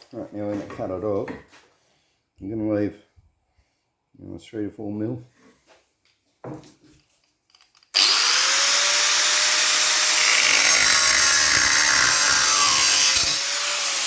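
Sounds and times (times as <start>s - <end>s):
power cutting tool cutting metal: 8.0s - 14.0s.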